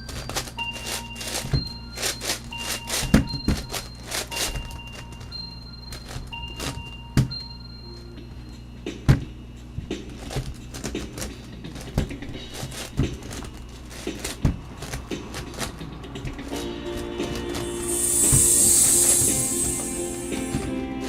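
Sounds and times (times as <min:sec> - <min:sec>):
faint music: 0:00.0 - 0:21.0
sharp plastic knocks: 0:09.1 - 0:16.6.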